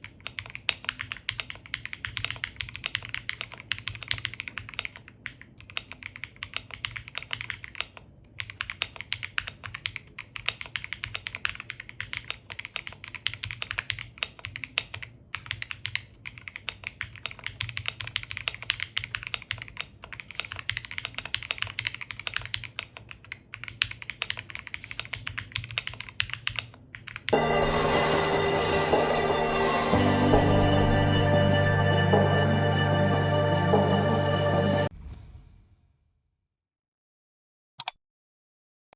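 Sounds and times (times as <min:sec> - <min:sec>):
mechanical keyboard typing: 0:00.0 - 0:27.4
music: 0:27.3 - 0:34.9.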